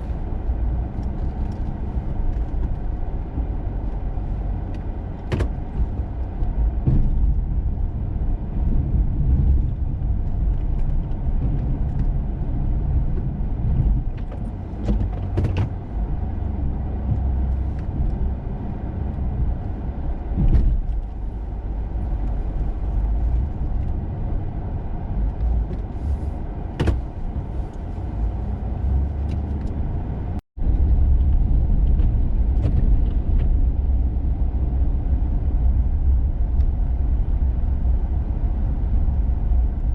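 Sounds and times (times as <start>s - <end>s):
truck engine rumbling: 0.0s - 39.9s
plow blade knocks and clunks: 13.8s - 15.8s.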